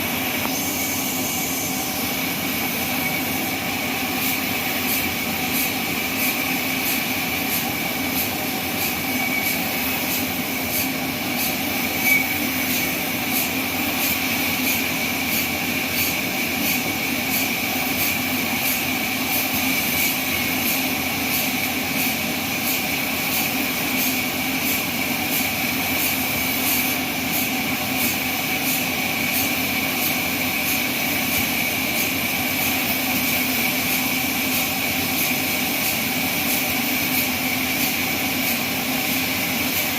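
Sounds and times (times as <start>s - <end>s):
high-pitched saw whine: 0.0s - 20.5s.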